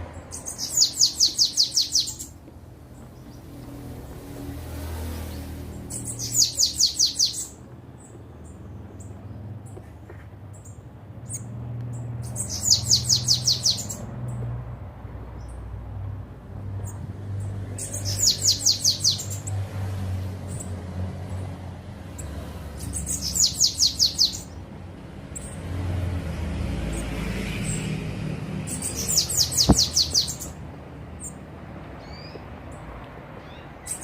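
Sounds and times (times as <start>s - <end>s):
bird singing high notes: 0.3s - 2.4s, 4.9s - 7.6s.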